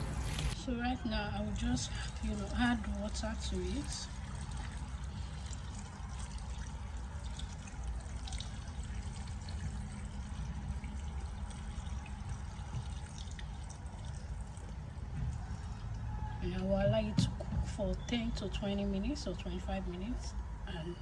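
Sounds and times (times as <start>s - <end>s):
water pouring into a pot: 0.0s - 0.6s, 1.9s - 15.0s.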